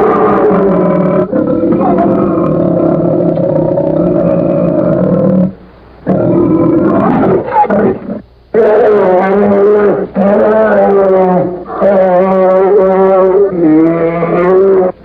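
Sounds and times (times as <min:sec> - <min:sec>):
cartoon dinosaur call: 0:08.6 - 0:15.0.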